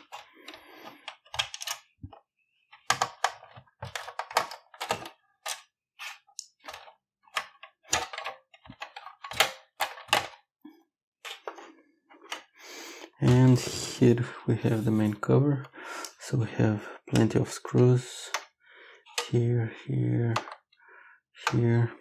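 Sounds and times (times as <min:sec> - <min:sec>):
plastic parts handled: 0:00.0 - 0:10.5, 0:11.2 - 0:12.6, 0:18.3 - 0:19.4.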